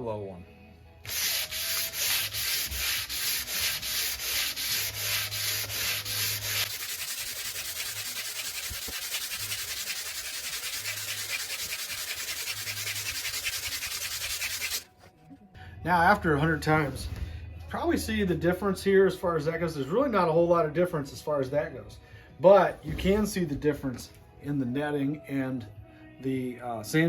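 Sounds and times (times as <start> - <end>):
sanding mesh rubbing on chalkboard: 1.1 - 14.9.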